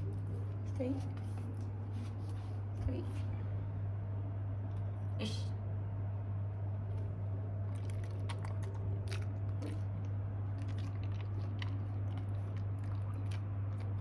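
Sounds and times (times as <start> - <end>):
low hum: 0.0 - 14.0
dog chewing wetly: 7.5 - 14.0.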